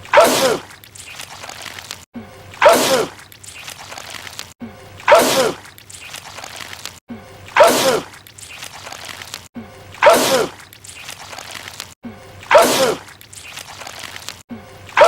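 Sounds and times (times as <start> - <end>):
man sneezing loudly: 7.6 - 8.1, 12.5 - 13.0.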